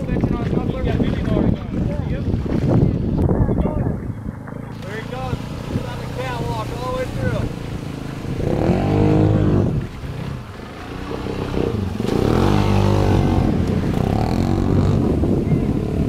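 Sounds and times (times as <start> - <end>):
off-road engine revving: 4.3 - 16.0.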